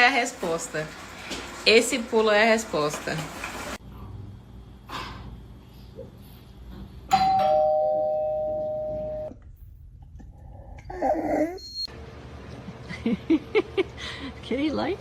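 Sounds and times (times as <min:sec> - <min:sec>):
two-note doorbell chime: 0:07.1 - 0:09.3.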